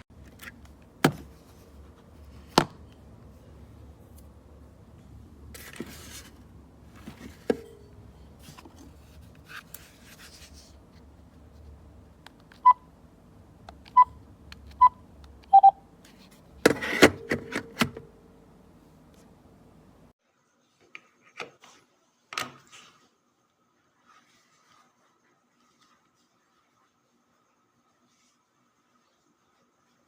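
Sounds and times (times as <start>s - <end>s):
cordless phone key beeps: 15.5s - 15.8s.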